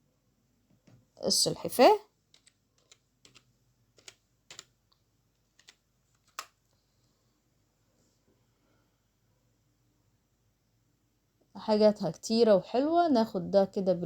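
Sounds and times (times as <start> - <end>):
faint keyboard keystrokes: 2.3 - 6.8.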